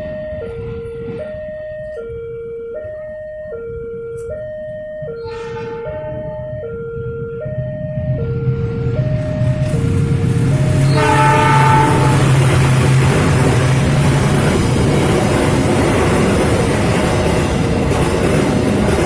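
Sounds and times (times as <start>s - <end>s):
level-crossing two-tone alarm: 0.0s - 12.2s
low rumble: 4.8s - 11.0s.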